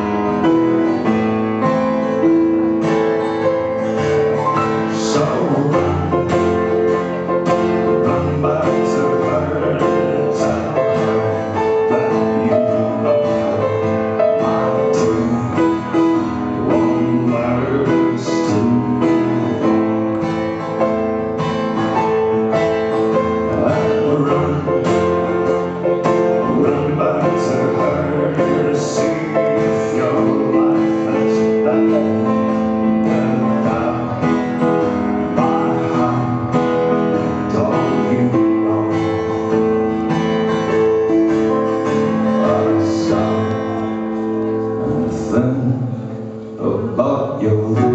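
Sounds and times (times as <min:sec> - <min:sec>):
live band playing: 0:00.0 - 0:16.5
held keyboard chords: 0:00.0 - 0:47.9.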